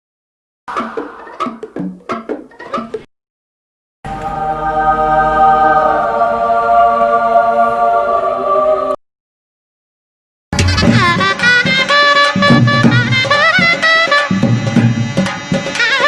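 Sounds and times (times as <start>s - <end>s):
choir singing sustained chord: 4.1s - 9.0s.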